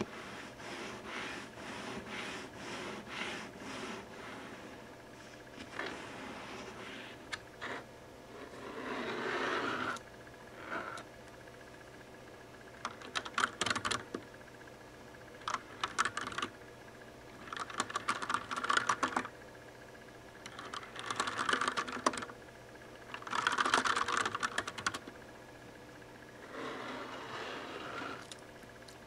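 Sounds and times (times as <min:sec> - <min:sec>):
mechanical keyboard typing: 0:12.8 - 0:14.2, 0:15.4 - 0:16.5, 0:17.4 - 0:19.3, 0:20.4 - 0:22.3, 0:23.1 - 0:25.0.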